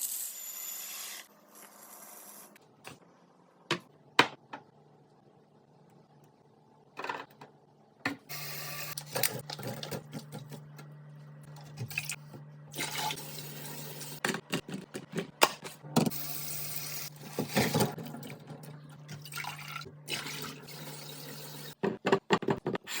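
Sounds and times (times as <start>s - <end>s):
low steady hum: 9.0s - 14.3s
water running into container: 11.6s - 14.2s, 16.3s - 21.8s.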